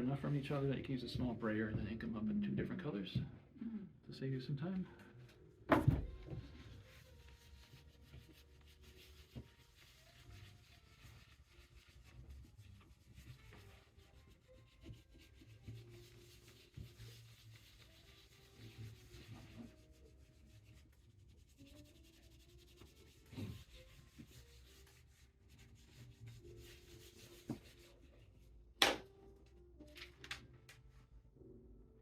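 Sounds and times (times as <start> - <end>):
paper rubbing strokes: 6.4 - 28.1.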